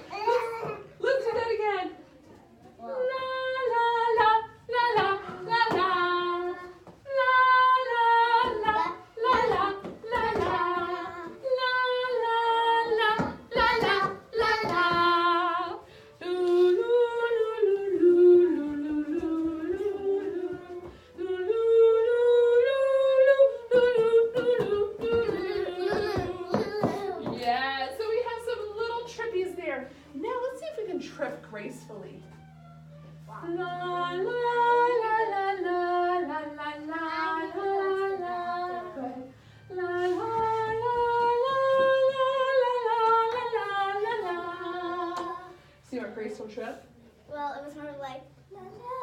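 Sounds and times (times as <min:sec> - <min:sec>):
woman singing unaccompanied: 0:02.7 - 0:46.6.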